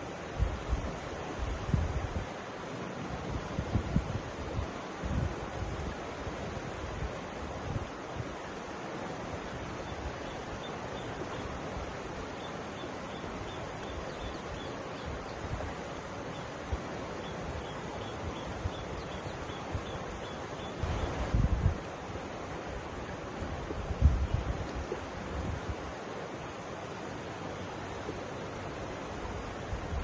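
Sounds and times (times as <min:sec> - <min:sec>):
river water flowing: 0:00.0 - 0:30.0
wind rumble on microphone: 0:00.3 - 0:08.5, 0:13.2 - 0:26.0, 0:27.9 - 0:30.0.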